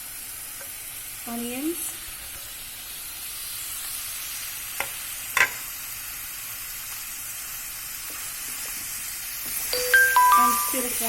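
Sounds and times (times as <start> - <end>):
vegetables and meat sizzling in oil: 0.0 - 11.0.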